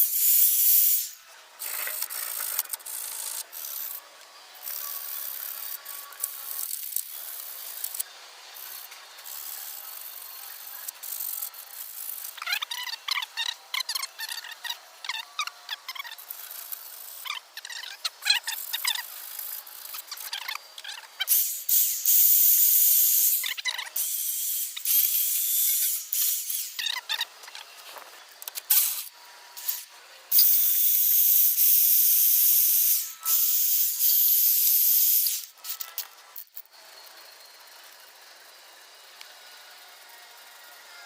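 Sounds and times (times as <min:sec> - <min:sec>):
spray paint can hissing: 0:00.0 - 0:04.0, 0:04.6 - 0:27.3, 0:28.5 - 0:36.5
short clicks and scrapes: 0:00.3 - 0:09.8, 0:24.8 - 0:31.5, 0:32.8 - 0:37.1.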